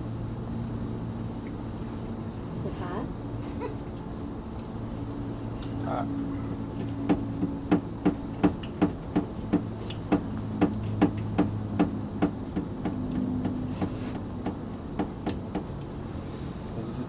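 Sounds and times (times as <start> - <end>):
knocking on a hard surface: 7.0 - 15.7.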